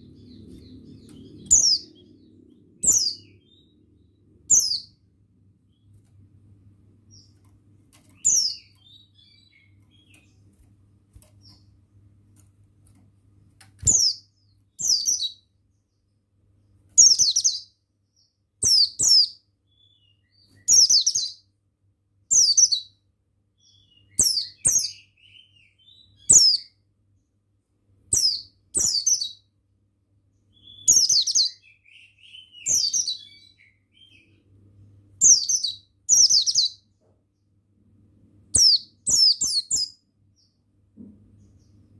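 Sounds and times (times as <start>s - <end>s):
soft bird twittering: 0.0s - 5.0s, 8.1s - 10.4s, 13.8s - 16.2s, 17.0s - 21.4s, 23.6s - 26.8s, 28.1s - 29.5s, 30.4s - 34.5s, 35.2s - 37.0s, 38.5s - 40.6s
bird high chirps: 0.0s - 5.1s, 8.1s - 10.4s, 13.8s - 16.1s, 17.0s - 21.5s, 22.3s - 23.0s, 23.6s - 26.8s, 28.1s - 29.5s, 30.4s - 34.5s, 35.2s - 37.0s, 38.5s - 40.6s
faint low hum: 0.0s - 41.9s.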